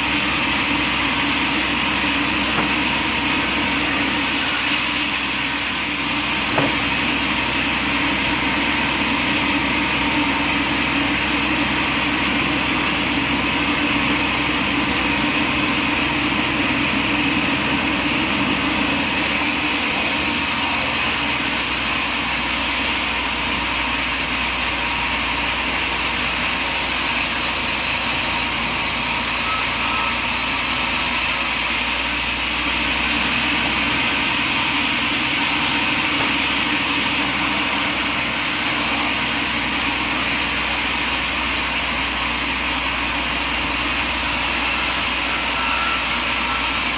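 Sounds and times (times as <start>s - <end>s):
mill working a log: 0.0s - 46.9s
sawmill engine running: 0.0s - 46.9s.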